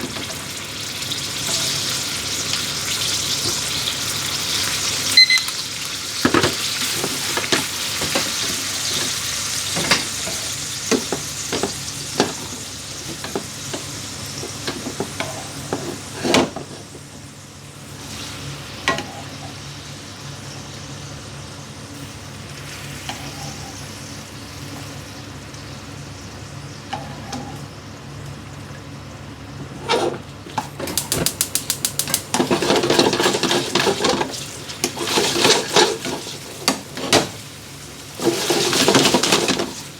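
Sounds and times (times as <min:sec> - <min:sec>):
food sizzling in a frying pan: 0:00.0 - 0:39.9.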